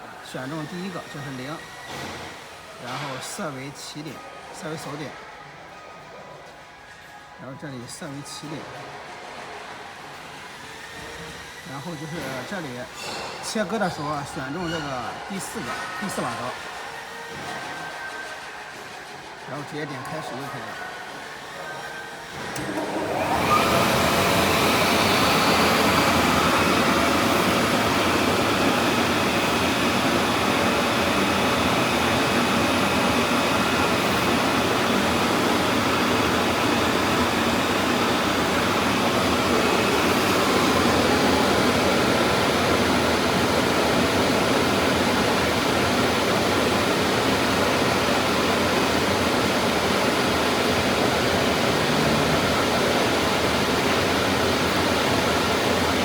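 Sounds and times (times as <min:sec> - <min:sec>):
cutting machine rushing noise: 0:18.5 - 0:56.0.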